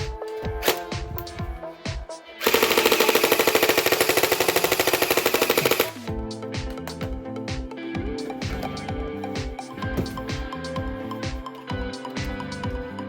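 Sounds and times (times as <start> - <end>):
background music: 0.0 - 13.0
toy gun machine-gun effect: 2.4 - 6.1.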